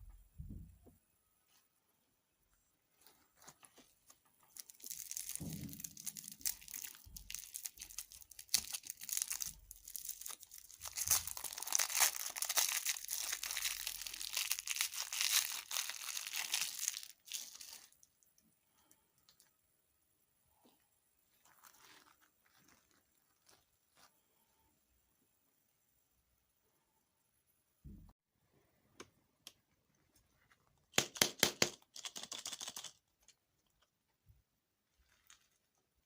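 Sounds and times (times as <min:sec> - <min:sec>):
packaging crinkling and tearing: 0:03.4 - 0:18.0, 0:21.4 - 0:24.1.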